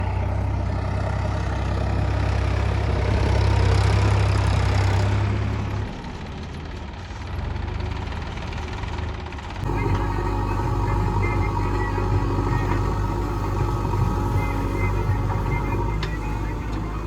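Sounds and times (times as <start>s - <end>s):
heavy diesel engine humming: 6.8s - 17.0s.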